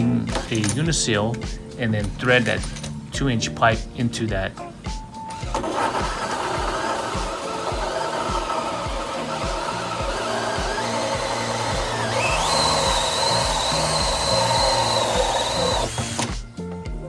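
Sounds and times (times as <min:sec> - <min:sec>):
power drill whining: 0:00.0 - 0:00.8, 0:05.3 - 0:16.4
background music with steady beat: 0:00.0 - 0:17.0.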